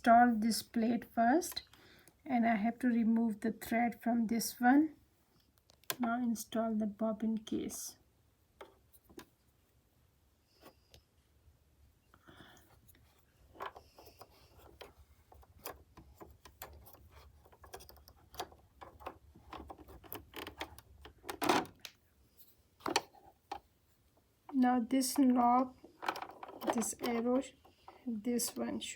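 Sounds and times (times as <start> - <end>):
small clicks and taps: 5.4 - 6.1.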